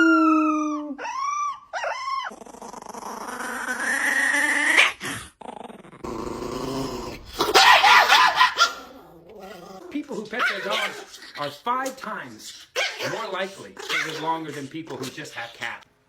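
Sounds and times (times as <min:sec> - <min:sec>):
dog howling: 0:00.0 - 0:02.4
dog yipping: 0:00.0 - 0:02.4, 0:07.4 - 0:09.6, 0:10.4 - 0:11.1, 0:12.7 - 0:13.2, 0:13.8 - 0:14.3
dog whining: 0:00.0 - 0:05.2
dog growling: 0:02.0 - 0:15.8.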